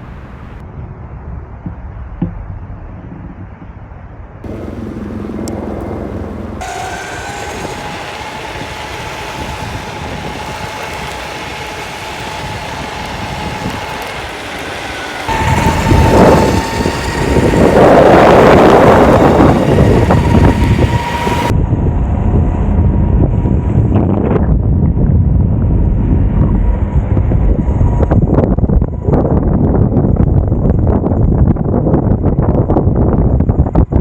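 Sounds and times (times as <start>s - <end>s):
rolling wheel and road noise: 0.0s - 0.6s, 4.5s - 21.6s
wind buffeting microphone: 0.0s - 34.0s
electric motor whine: 4.5s - 21.5s.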